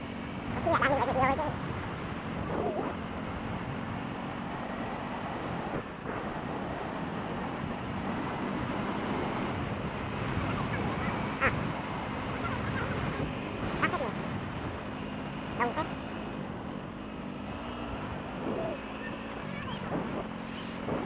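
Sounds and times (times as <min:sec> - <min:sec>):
faint voices: 0:12.2 - 0:14.2.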